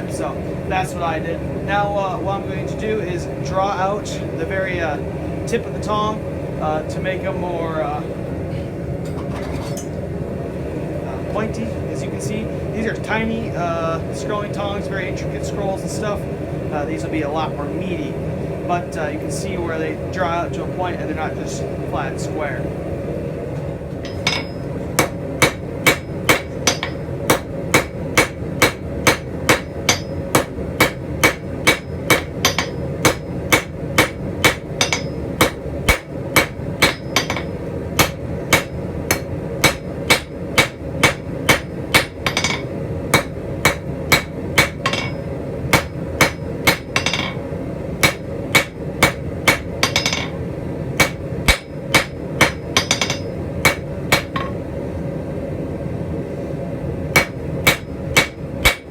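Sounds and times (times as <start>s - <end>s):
background hum: 0.0s - 58.9s
hammer striking steel on anvil: 24.0s - 47.4s, 48.0s - 50.4s, 51.0s - 54.6s, 57.1s - 58.9s.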